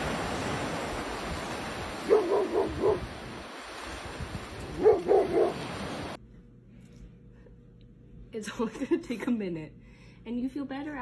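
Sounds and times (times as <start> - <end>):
dog barking: 2.0 - 3.1, 4.7 - 5.6.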